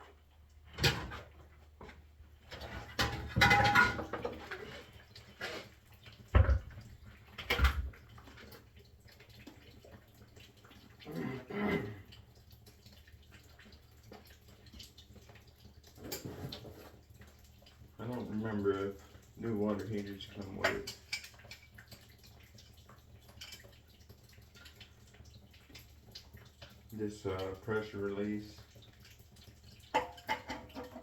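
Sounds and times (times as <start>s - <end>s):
clunks and knocks on plumbing: 0.7s - 4.7s, 6.2s - 8.2s.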